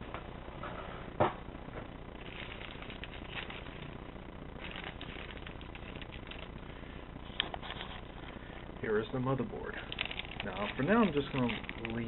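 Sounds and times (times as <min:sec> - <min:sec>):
packaging rustling and clicking: 0:02.2 - 0:04.0, 0:04.6 - 0:06.5, 0:09.9 - 0:12.0.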